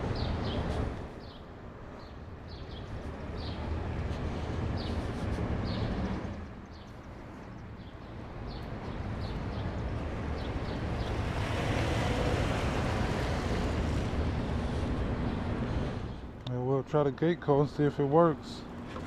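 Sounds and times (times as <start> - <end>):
tyres hissing on wet road: 11.2 - 15.8.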